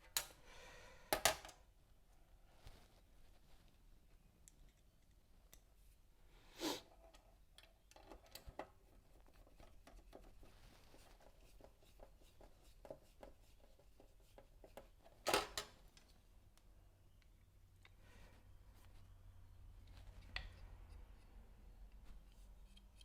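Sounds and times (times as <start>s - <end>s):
small parts clicking and knocking: 7.1s - 10.4s.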